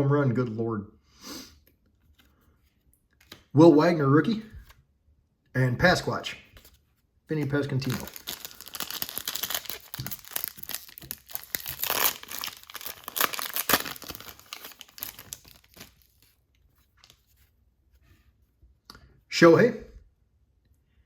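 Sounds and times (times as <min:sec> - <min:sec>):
wrapper torn and crinkled: 0:07.3 - 0:16.4.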